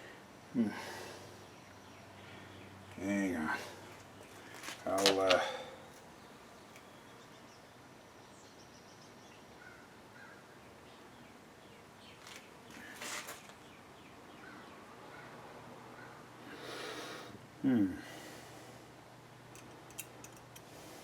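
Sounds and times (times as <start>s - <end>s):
faint bird calls: 8.8s - 10.6s
small clicks and rustles: 12.2s - 13.6s, 19.5s - 21.0s.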